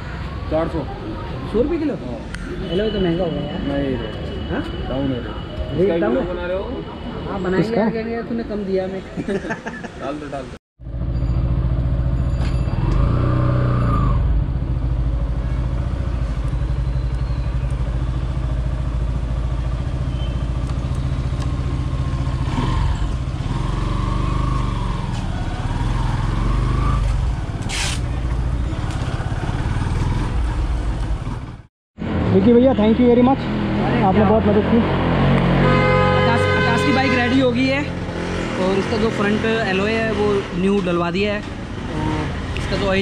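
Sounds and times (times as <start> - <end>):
motorcycle engine running: 10.8 - 13.7, 14.3 - 31.7.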